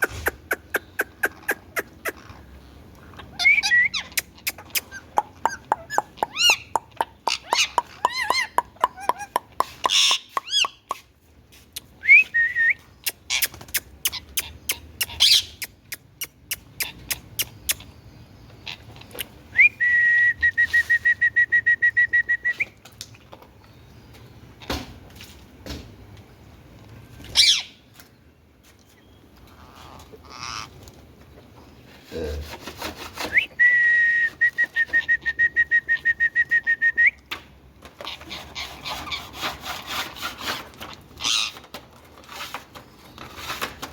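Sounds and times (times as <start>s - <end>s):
shrill bird calls: 3.3s - 10.9s.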